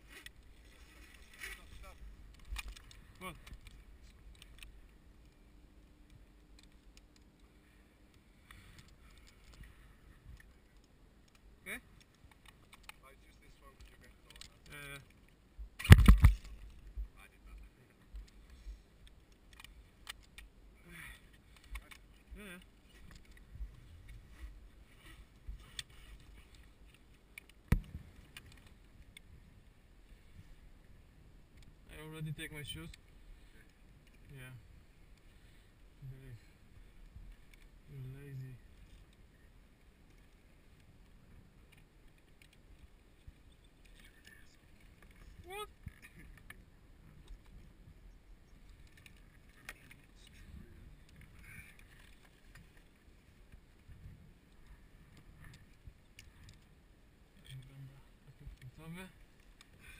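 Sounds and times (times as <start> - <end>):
faint low rumble: 0.0 - 59.9
faint clicks: 0.1 - 30.6, 31.5 - 35.6, 36.4 - 59.9
light clicks: 8.1 - 17.0.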